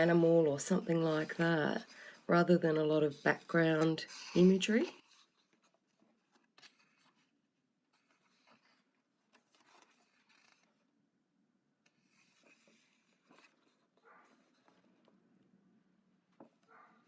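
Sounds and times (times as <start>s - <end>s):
paper pages rustling: 0.0s - 10.9s, 11.8s - 15.2s
soft scrapes: 11.9s - 14.9s.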